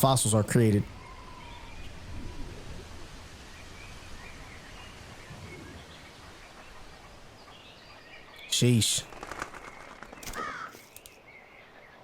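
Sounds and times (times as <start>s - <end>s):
faint bird chirps: 0.8s - 2.7s.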